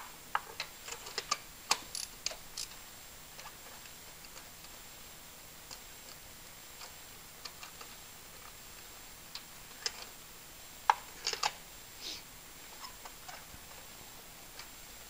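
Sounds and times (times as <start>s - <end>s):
ratchet clicking: 1.9s - 2.8s.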